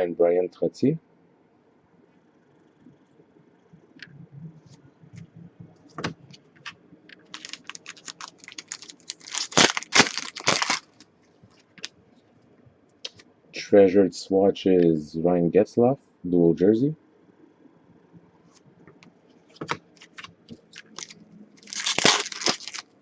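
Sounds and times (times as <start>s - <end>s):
wrapper crinkling and crackling: 7.2s - 11.0s, 20.0s - 23.0s.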